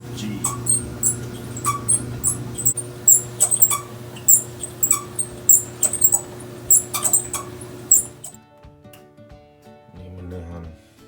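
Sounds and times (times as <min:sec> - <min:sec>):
clothes dryer humming: 0:00.0 - 0:08.4
high-pitched dryer squeaks: 0:00.0 - 0:08.4.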